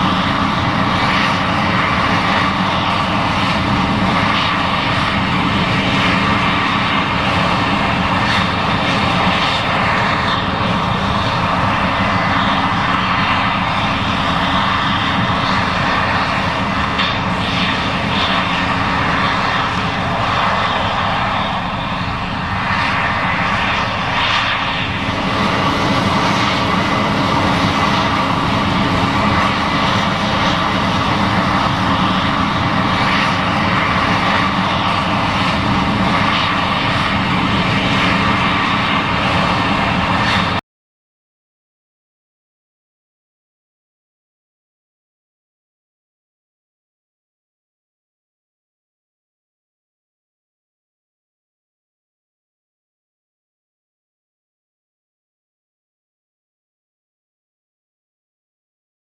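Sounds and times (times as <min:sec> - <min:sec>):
combine harvester engine drone: 0:00.0 - 0:40.6.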